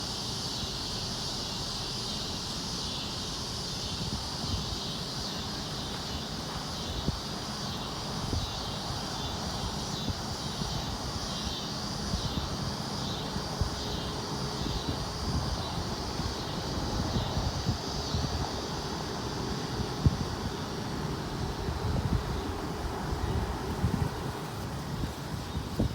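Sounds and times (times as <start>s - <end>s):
insects buzzing: 0.0s - 25.9s.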